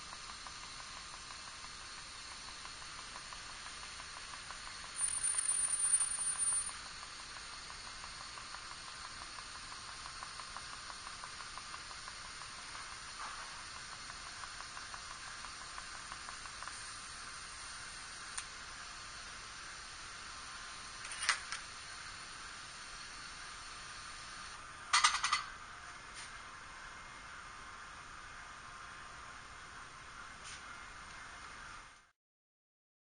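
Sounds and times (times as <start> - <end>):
welding arc hissing: 0.0 - 24.6.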